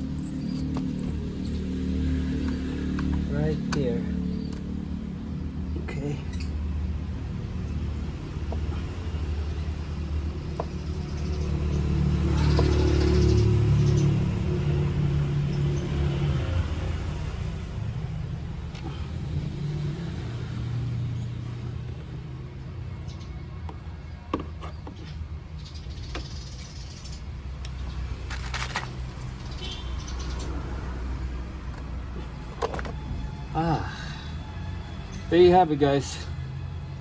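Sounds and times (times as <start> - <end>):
plastic parts clicking and rustling: 28.3 - 29.0.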